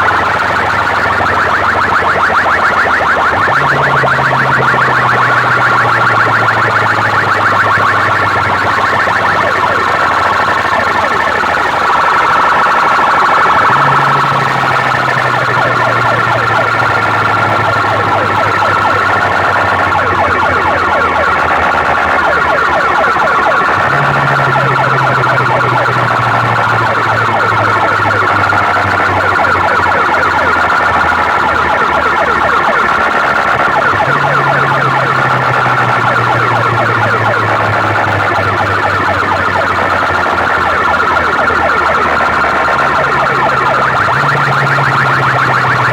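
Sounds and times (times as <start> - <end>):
siren-like electronic wails: 0.0 - 45.9.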